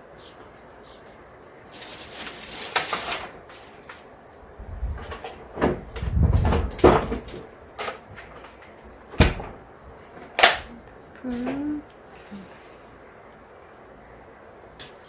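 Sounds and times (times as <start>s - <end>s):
objects rustling and knocking: 4.8s - 10.4s.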